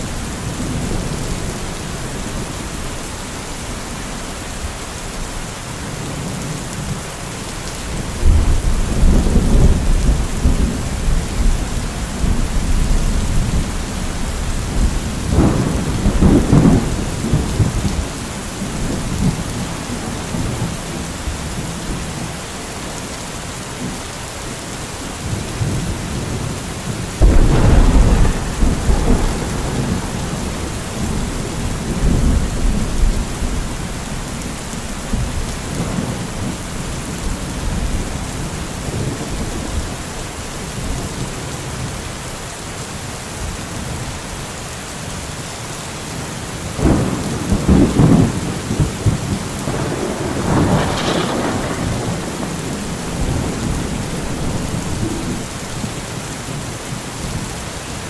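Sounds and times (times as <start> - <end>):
steady rain: 0.0 - 58.0
rolling thunder: 7.9 - 21.7, 25.2 - 41.9, 46.7 - 56.6.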